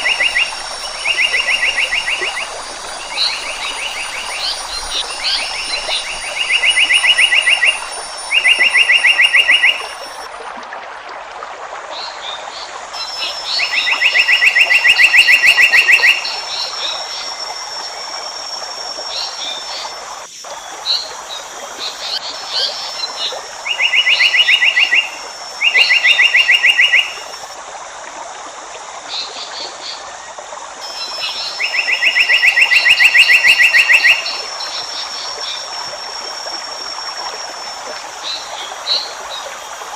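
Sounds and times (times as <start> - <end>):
bird chirps: 0.0 - 10.3
steady high drone: 0.0 - 10.3.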